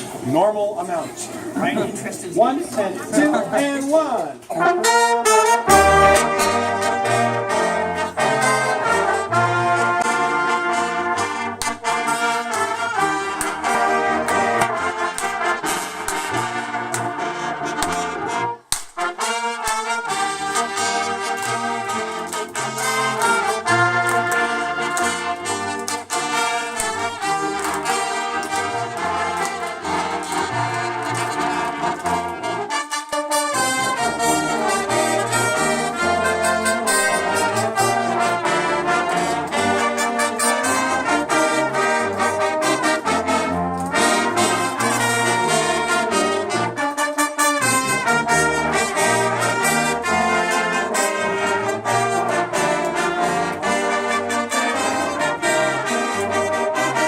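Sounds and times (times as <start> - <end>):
brass ensemble playing: 0.0 - 57.0.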